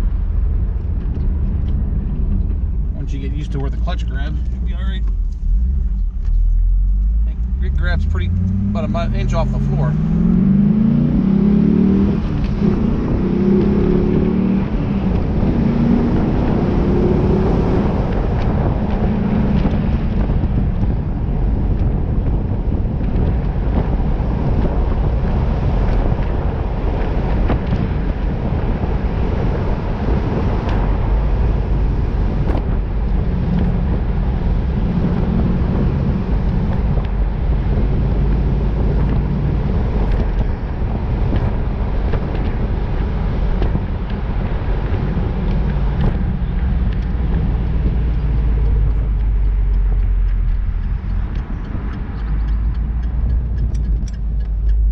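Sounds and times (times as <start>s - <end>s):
car engine accelerating: 0.0s - 54.9s
road and wind noise: 0.0s - 54.9s.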